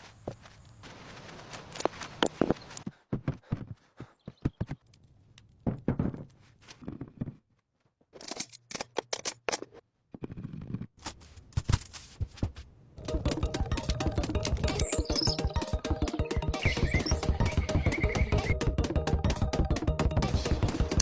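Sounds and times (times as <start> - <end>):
background music: 13.0 - 21.0.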